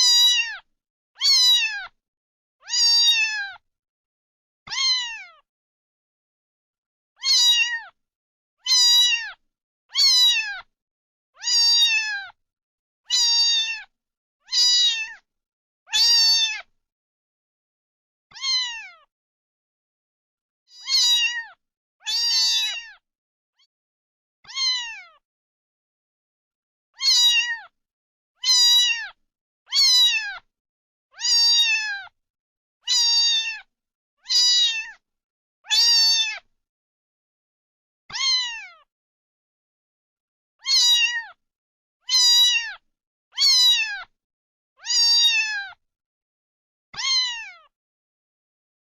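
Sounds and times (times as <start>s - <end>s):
cat meowing: 0.0s - 2.0s, 2.6s - 3.6s, 4.7s - 5.5s, 7.2s - 8.0s, 8.6s - 10.7s, 11.4s - 12.4s, 13.1s - 13.9s, 14.5s - 15.2s, 15.9s - 16.7s, 18.3s - 19.1s, 20.7s - 23.0s, 24.4s - 25.2s, 27.0s - 27.8s, 28.4s - 30.4s, 31.1s - 32.2s, 32.8s - 35.0s, 35.6s - 36.5s, 38.1s - 38.9s, 40.6s - 41.4s, 42.0s - 42.8s, 43.4s - 44.1s, 44.8s - 45.8s, 47.0s - 47.7s.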